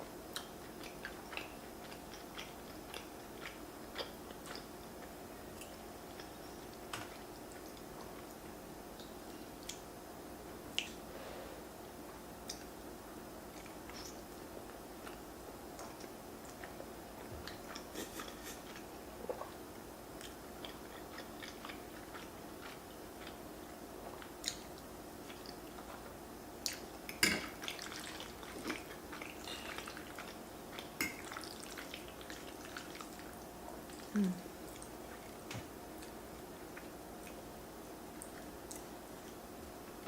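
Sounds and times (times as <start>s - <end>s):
faint steady hum: 0.0s - 40.0s
close chewing: 0.3s - 8.4s, 20.2s - 40.0s.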